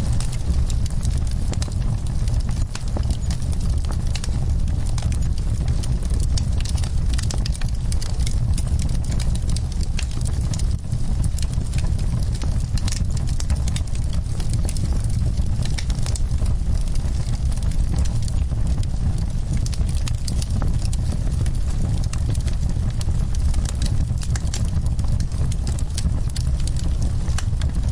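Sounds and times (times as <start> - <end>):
steady low rumble: 0.0 - 27.9
wood fire crackling: 0.0 - 27.9
sharp pops and snaps: 11.3 - 17.4.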